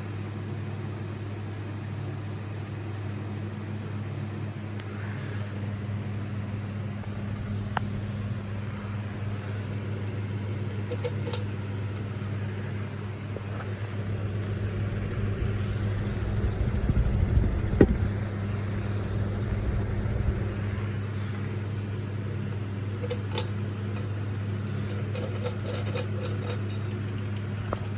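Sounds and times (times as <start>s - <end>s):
ceiling fan motor hum: 0.0s - 27.9s
low rumble: 14.0s - 22.0s.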